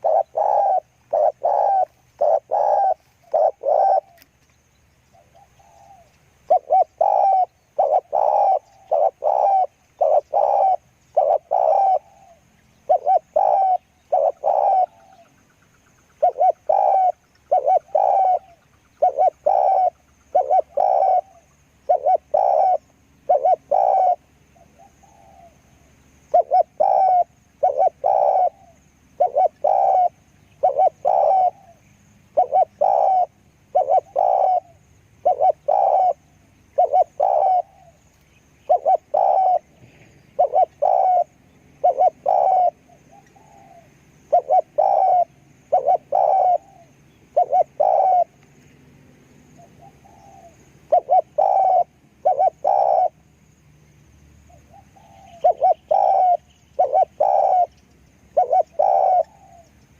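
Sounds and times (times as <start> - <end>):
dove cooing: 0.0 - 4.3, 5.2 - 15.4, 16.1 - 48.7, 49.4 - 53.3, 54.5 - 59.8.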